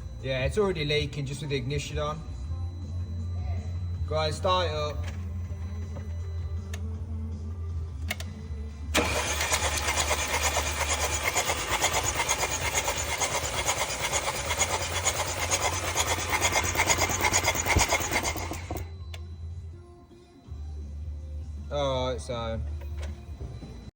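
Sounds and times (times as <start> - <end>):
engine mechanical chatter: 8.9 - 19.2.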